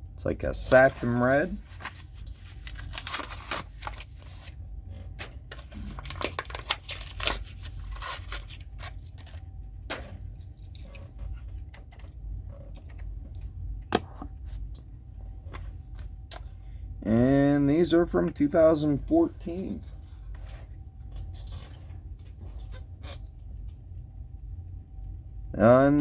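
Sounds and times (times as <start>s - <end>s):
plastic packaging tearing and crinkling: 1.4s - 13.1s.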